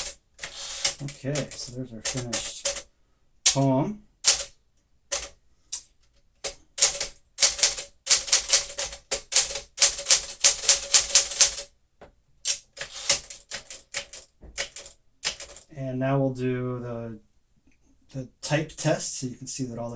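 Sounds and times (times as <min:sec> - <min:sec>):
manual typewriter clicking: 0:00.0 - 0:02.9, 0:03.5 - 0:05.3, 0:06.4 - 0:11.7, 0:12.5 - 0:15.7.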